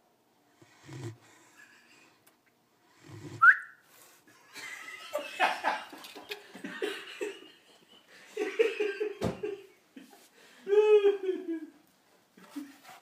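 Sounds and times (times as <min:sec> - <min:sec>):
puppy snoring: 0:00.5 - 0:01.6, 0:02.9 - 0:03.5
people laughing: 0:04.4 - 0:11.8.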